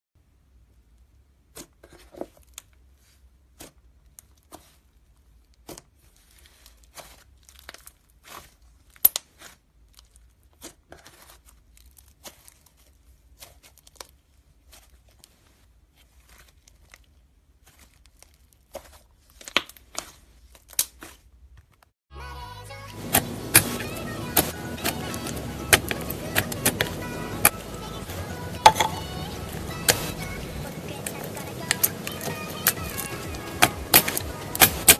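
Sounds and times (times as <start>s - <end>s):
music: 22.1s - 34.9s.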